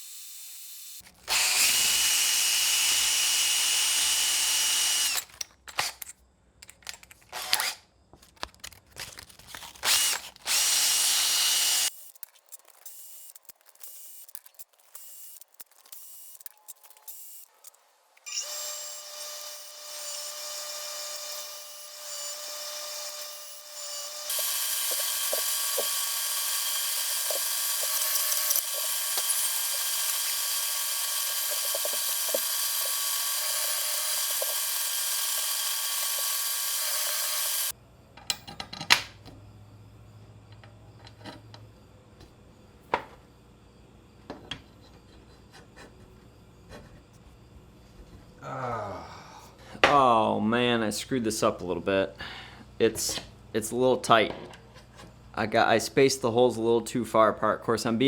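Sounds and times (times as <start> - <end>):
power tool running: 0.0 - 5.9, 7.3 - 7.8, 9.8 - 12.0, 18.3 - 37.7
clicks and knocks of parts: 5.1 - 10.5.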